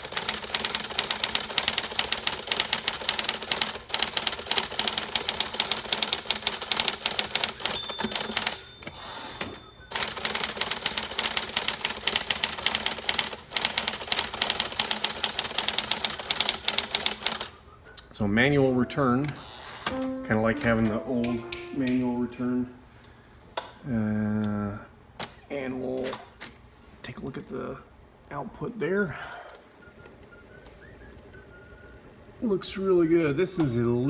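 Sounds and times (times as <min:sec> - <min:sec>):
electric typewriter clacking: 0:00.0 - 0:17.5
typewriter motor hum: 0:00.0 - 0:17.5.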